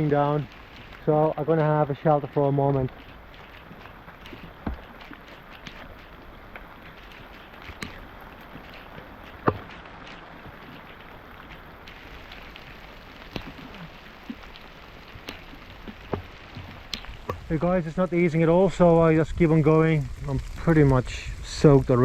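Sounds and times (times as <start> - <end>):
heavy rain: 0.0 - 22.0
raindrops ticking close by: 0.0 - 22.0.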